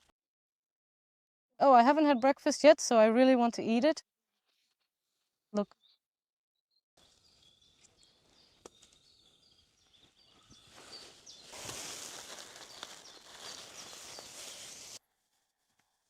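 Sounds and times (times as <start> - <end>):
birds chirping: 7.0 - 15.0
rustling: 7.0 - 16.0.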